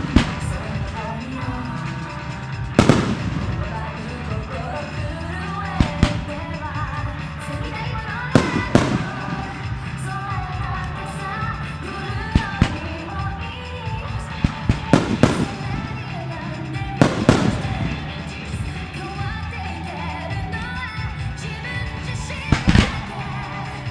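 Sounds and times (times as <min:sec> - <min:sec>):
music: 0:00.0 - 0:23.9
firework shells bursting: 0:02.7 - 0:05.0, 0:05.8 - 0:06.9, 0:08.3 - 0:10.2, 0:10.8 - 0:13.4, 0:14.3 - 0:19.4, 0:22.4 - 0:23.9.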